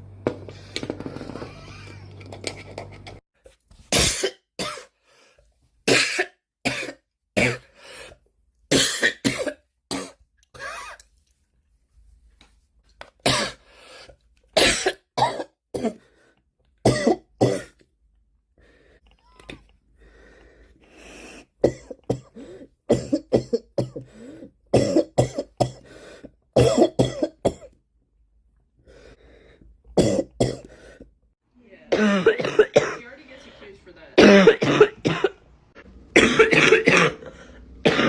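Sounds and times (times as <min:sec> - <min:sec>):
people coughing: 0:31.9 - 0:33.2, 0:34.2 - 0:35.4, 0:36.1 - 0:38.0.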